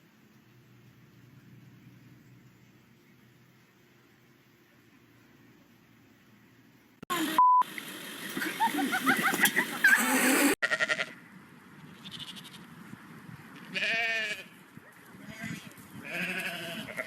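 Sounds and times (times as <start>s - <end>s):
short beep: 7.4s - 7.7s
goat bleat: 10.6s - 11.2s, 12.0s - 12.6s, 13.7s - 14.6s, 15.2s - 17.0s.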